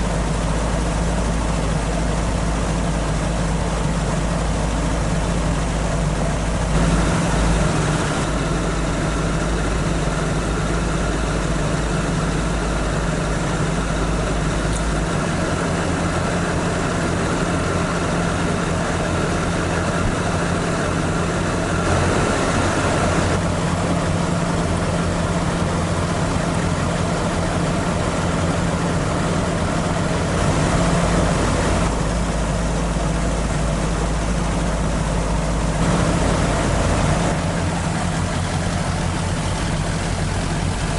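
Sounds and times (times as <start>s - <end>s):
car engine idling: 0.0s - 40.9s.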